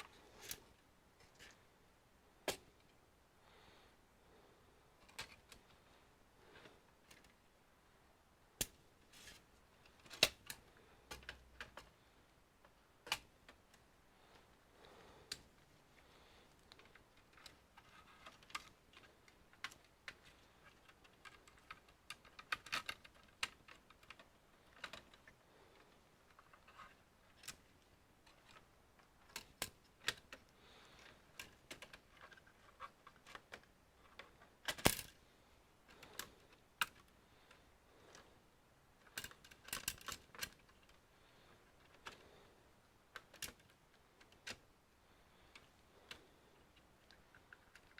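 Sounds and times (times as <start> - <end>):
computer parts clicking and tapping: 9.8 - 12.0, 12.6 - 13.8, 16.6 - 25.4, 39.0 - 41.0.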